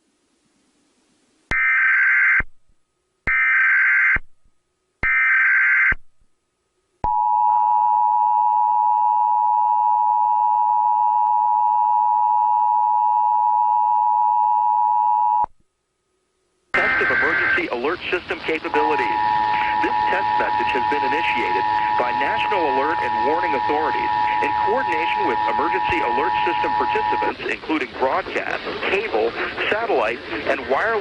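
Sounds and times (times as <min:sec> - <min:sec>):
two-tone alarm: 0:01.5 - 0:02.4, 0:03.3 - 0:04.2, 0:05.0 - 0:06.0, 0:18.6 - 0:27.6
digital data warble: 0:18.6 - 0:27.7.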